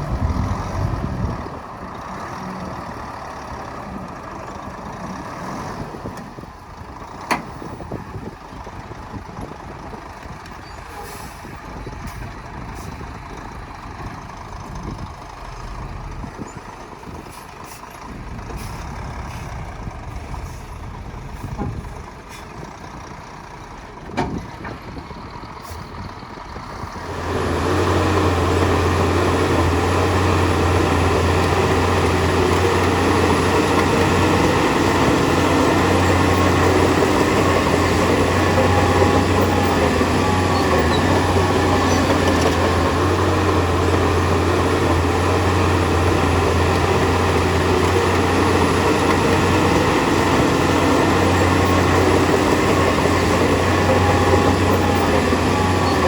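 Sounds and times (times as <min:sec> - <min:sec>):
diesel earthmoving machinery running: 0:00.0 - 0:56.0
loud diesel engine droning: 0:00.0 - 0:56.0
knocks and clanks: 0:24.0 - 0:25.1.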